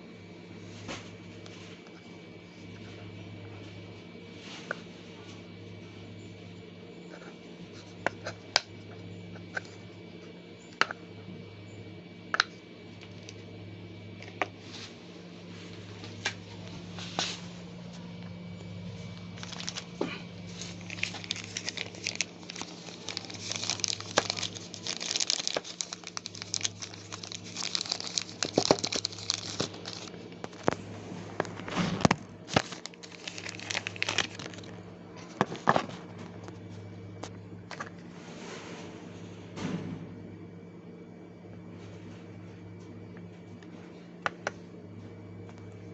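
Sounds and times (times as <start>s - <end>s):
steady low hum: 0.0s - 45.9s
plastic crinkling and rustling: 18.8s - 36.4s
packaging clicks and taps: 19.3s - 19.9s, 20.8s - 30.8s, 31.4s - 34.7s.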